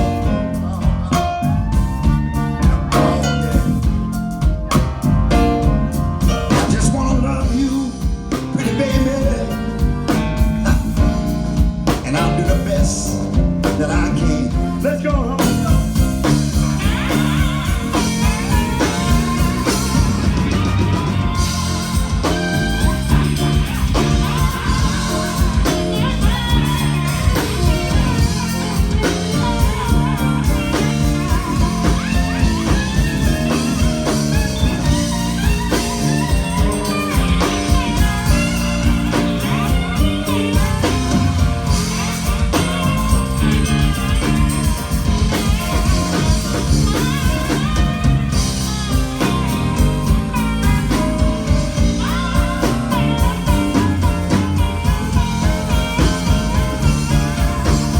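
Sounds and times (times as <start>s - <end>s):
bass: 0.0s - 57.9s
drums: 0.0s - 57.9s
electric guitar lead: 15.4s - 57.9s.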